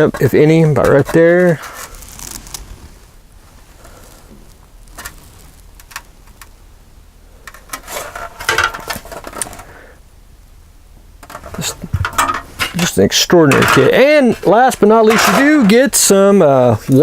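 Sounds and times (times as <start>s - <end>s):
rustling: 0.0s - 6.6s, 7.3s - 9.9s, 11.2s - 17.0s
plastic parts clicking and tapping: 5.8s - 6.5s, 7.4s - 9.6s, 11.2s - 12.9s.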